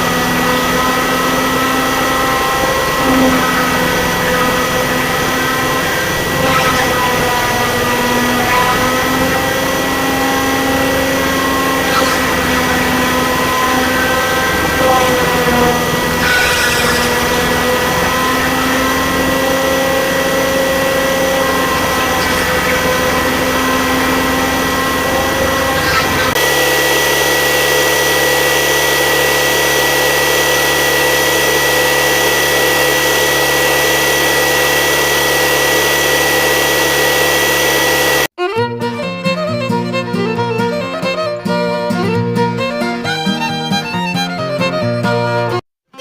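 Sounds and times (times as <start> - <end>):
music: 0.0 - 26.3, 38.4 - 46.0
small motors whining hum: 0.0 - 38.3
steady motor hum: 0.0 - 38.3.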